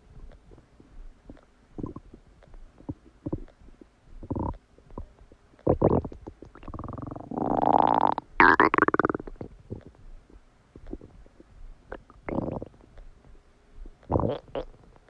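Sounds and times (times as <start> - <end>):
stomach growl: 1.2 - 10.0, 10.8 - 12.8, 14.0 - 14.9
stomach gurgling: 1.2 - 10.0, 10.8 - 12.8, 13.8 - 14.9.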